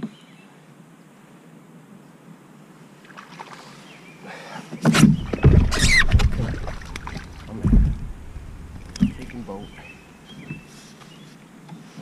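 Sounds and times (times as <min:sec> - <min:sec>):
water splashing around a kayak: 0:03.0 - 0:03.9, 0:04.8 - 0:10.3
wind rumble on microphone: 0:05.0 - 0:09.9.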